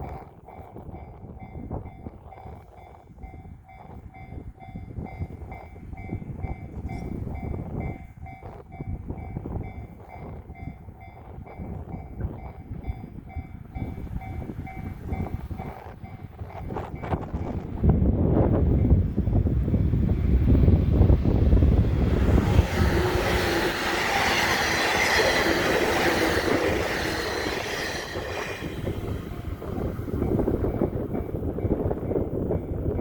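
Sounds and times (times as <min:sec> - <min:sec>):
level crossing warning bell: 0:00.0 - 0:17.6
electric train running past: 0:00.0 - 0:33.0
wind buffeting microphone: 0:00.0 - 0:33.0.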